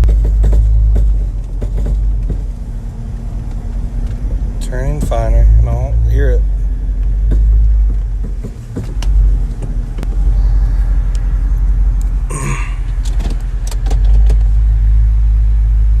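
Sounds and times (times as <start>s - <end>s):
wheel bearing knocking and clicking: 0.0s - 2.6s, 7.0s - 10.2s
car driving drone: 0.0s - 16.0s.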